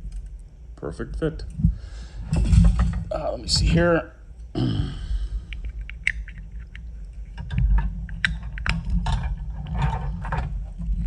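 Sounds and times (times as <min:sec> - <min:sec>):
low steady hum: 0:00.0 - 0:11.0
plastic parts clicking: 0:05.5 - 0:10.5.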